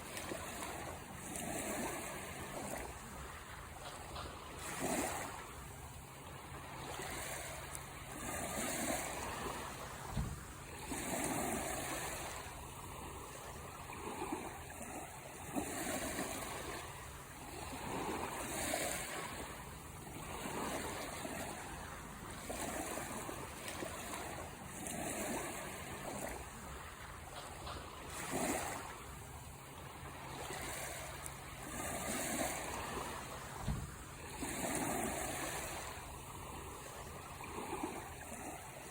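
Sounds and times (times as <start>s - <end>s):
sea waves washing onto shore: 0.0s - 38.9s.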